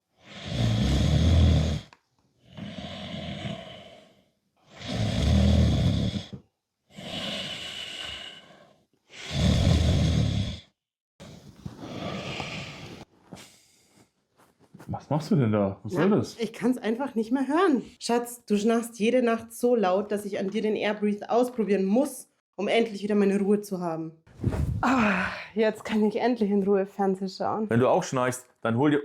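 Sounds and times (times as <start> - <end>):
person snoring loudly: 0.2 - 1.9, 2.5 - 10.7, 11.8 - 13.0.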